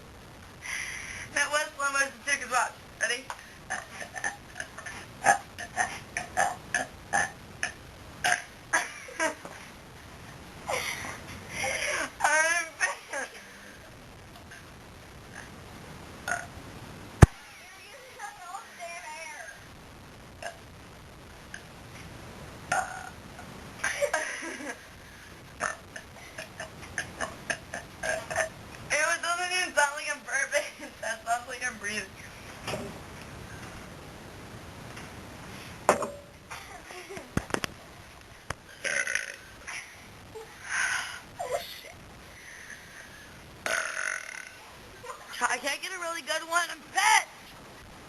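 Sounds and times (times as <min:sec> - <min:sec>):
person burping: 0:03.7 - 0:08.9, 0:16.2 - 0:16.5, 0:20.4 - 0:20.6, 0:22.7 - 0:23.2, 0:25.6 - 0:28.6, 0:38.7 - 0:39.9, 0:43.6 - 0:44.6.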